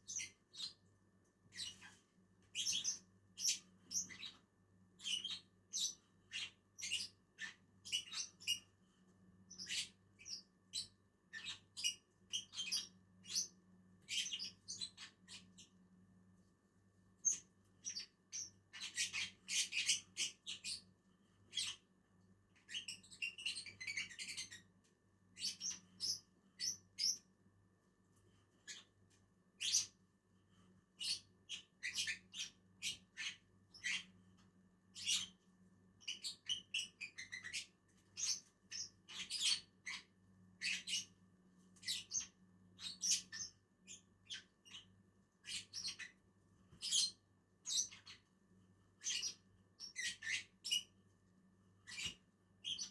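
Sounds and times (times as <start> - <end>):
lovebirds chirping: 0.0 - 0.8, 1.5 - 4.4, 5.0 - 8.7, 9.5 - 13.5, 14.1 - 15.7, 17.2 - 20.8, 25.4 - 27.2, 31.0 - 34.1, 36.0 - 41.1, 41.8 - 46.2, 46.8 - 48.2, 49.0 - 50.9, 51.8 - 52.9.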